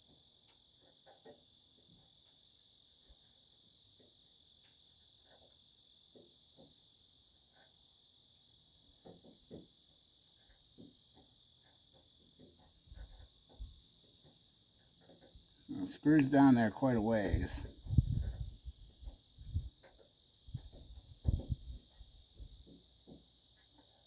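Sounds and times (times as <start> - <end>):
faint cricket chirring: 0.0 - 24.0
faint clicks and knocks: 7.5 - 16.5, 17.2 - 24.0.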